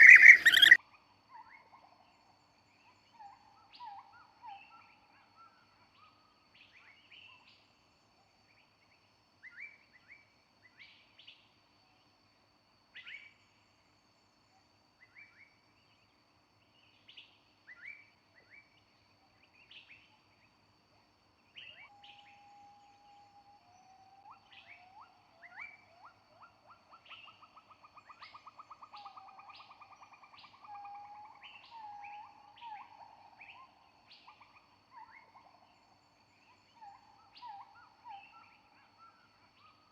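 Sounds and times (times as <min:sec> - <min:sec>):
bird trill: 0:00.0 - 0:00.8
bird whistling: 0:00.0 - 0:00.8
birds chirping: 0:00.0 - 0:00.8.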